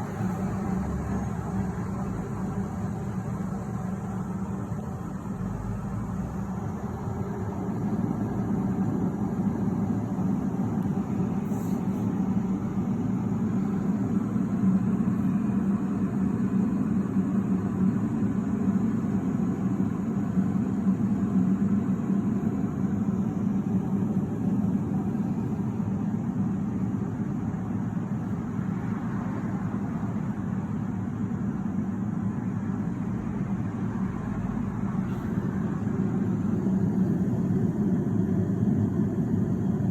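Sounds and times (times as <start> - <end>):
electric kettle heating water: 0.0 - 25.9, 34.9 - 39.9.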